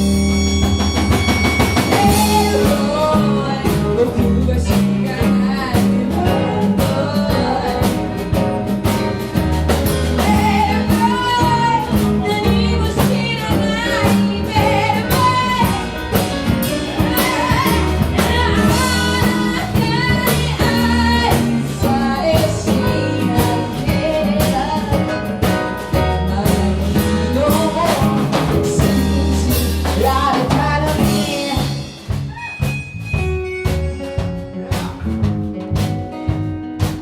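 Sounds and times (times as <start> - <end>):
band playing: 0.0 - 37.0
woman singing: 1.9 - 9.0, 10.0 - 32.8.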